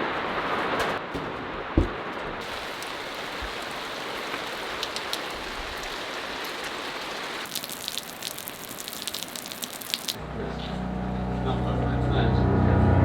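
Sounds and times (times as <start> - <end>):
rain hissing: 2.4 - 10.2
raindrops ticking: 2.4 - 10.2.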